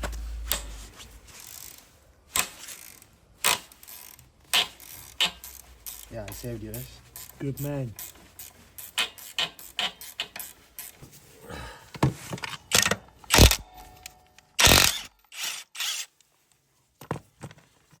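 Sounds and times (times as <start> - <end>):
tools and parts clicking and knocking: 1.4 - 11.0, 12.0 - 16.1.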